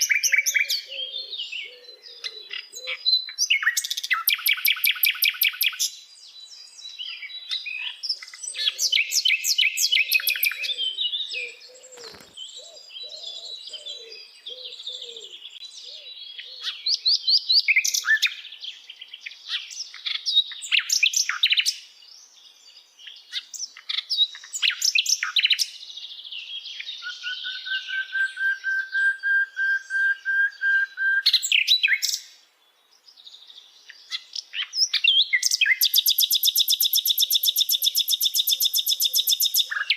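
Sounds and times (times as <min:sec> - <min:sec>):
flycatcher singing trills: 0:00.0 - 0:18.5, 0:33.0 - 0:39.9.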